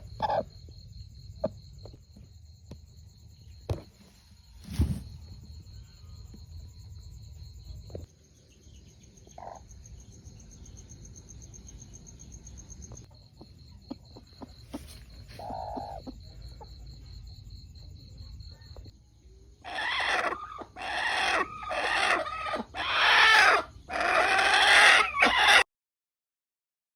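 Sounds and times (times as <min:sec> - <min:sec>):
chicken calling loudly: 0:19.6 - 0:25.7.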